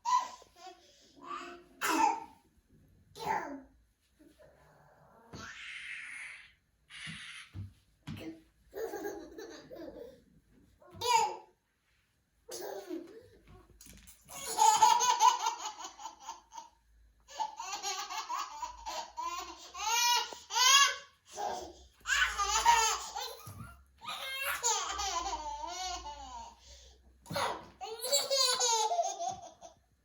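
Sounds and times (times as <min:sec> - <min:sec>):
baby laughing: 0:08.7 - 0:10.2, 0:14.3 - 0:26.6, 0:27.8 - 0:29.8.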